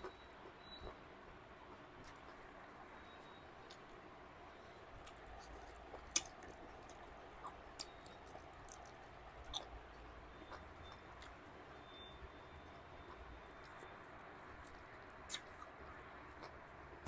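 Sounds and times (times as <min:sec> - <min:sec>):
person chewing food: 0:01.7 - 0:02.4, 0:03.6 - 0:04.0, 0:04.6 - 0:11.5, 0:13.0 - 0:17.0
mouth clicks: 0:14.6 - 0:15.7.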